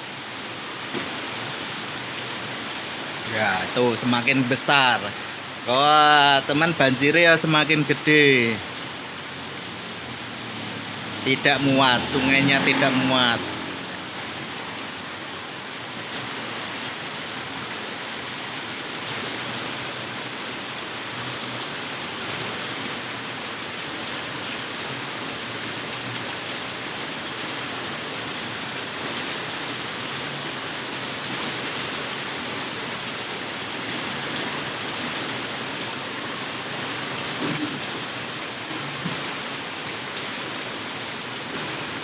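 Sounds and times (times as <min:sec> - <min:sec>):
floodwater rushing: 0:00.0 - 0:42.0
heavy rain falling: 0:00.0 - 0:42.0.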